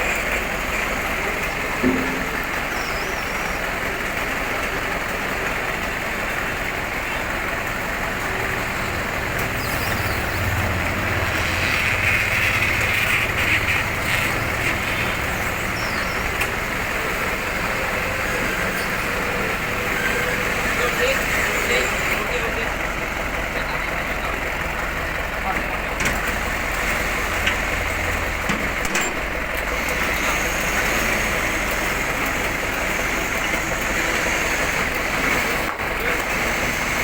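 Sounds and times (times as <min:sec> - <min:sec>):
road noise: 0:00.0 - 0:37.0
vehicle engine running: 0:00.0 - 0:37.0
short knock: 0:01.8 - 0:02.4.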